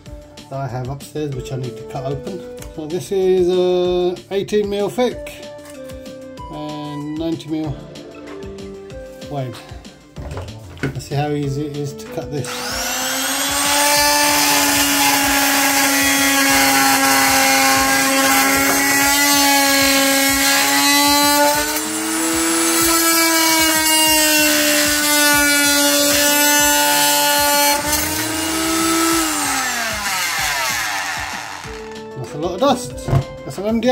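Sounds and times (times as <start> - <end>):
oscillating multi-tool cutting wood: 12.4 - 32.1.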